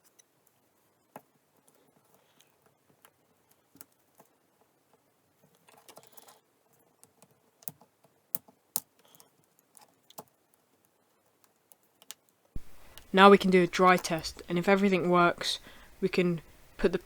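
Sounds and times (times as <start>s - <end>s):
small clicks and taps of tools: 0.0s - 13.1s.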